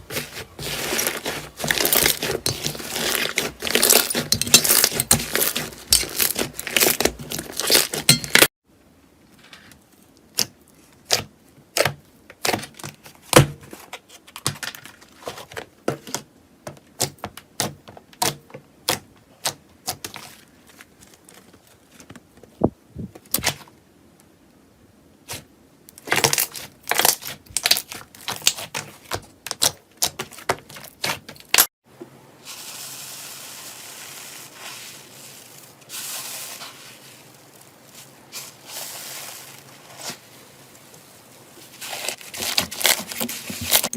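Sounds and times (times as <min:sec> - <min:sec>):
slime crackling and popping: 0:00.7 - 0:08.5
steady hiss: 0:32.1 - 0:41.7.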